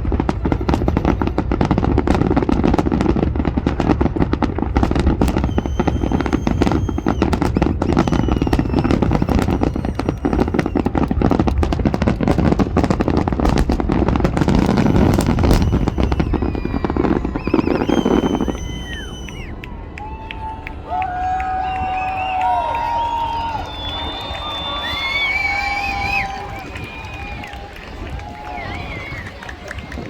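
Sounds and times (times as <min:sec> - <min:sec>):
fireworks bangs and crackles: 0:00.0 - 0:20.2, 0:21.2 - 0:30.0
fireworks whistles: 0:04.8 - 0:19.6, 0:21.8 - 0:27.5.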